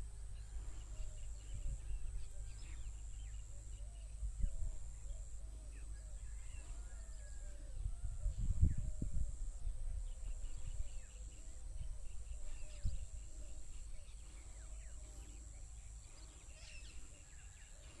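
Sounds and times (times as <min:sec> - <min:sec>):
wind on the microphone: 0:00.0 - 0:02.8, 0:06.1 - 0:14.9
small birds chirping: 0:00.0 - 0:07.5, 0:08.4 - 0:18.0
lower repeated bird calls: 0:00.0 - 0:18.0
steady high whine: 0:00.0 - 0:18.0.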